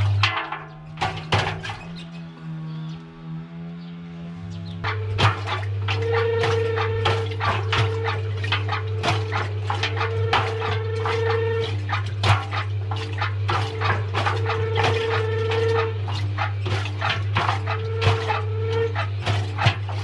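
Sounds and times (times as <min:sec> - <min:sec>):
washing machine motor hum: 0:00.0 - 0:20.0
washing machine whine: 0:00.0 - 0:20.0
rubbery squeaks: 0:01.2 - 0:02.4.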